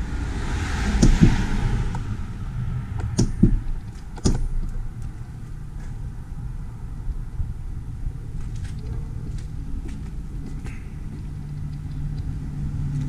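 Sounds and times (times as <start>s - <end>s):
sharp knocks: 0.9s - 1.7s, 3.0s - 4.7s.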